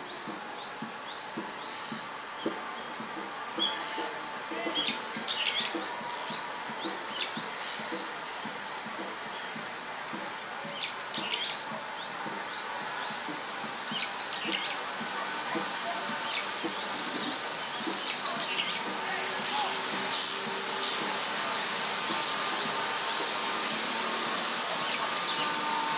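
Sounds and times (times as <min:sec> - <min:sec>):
small birds chirping: 0:00.0 - 0:08.1, 0:10.7 - 0:25.9
faint steady hiss: 0:00.0 - 0:25.9.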